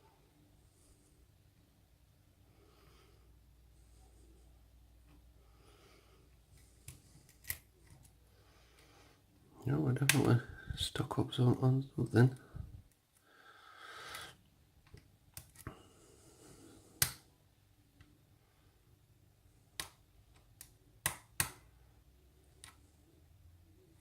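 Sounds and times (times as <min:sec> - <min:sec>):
lock pick clicking in a lock: 0:07.3 - 0:08.0
lock pick scraping: 0:07.3 - 0:08.0.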